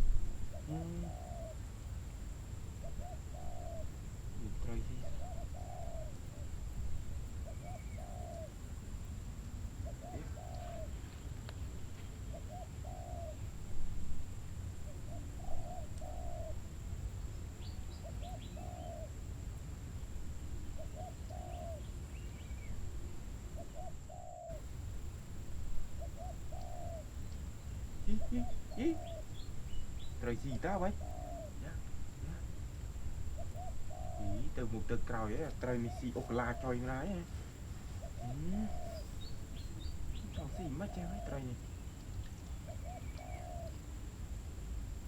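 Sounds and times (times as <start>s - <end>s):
low background rumble: 0.0s - 12.6s.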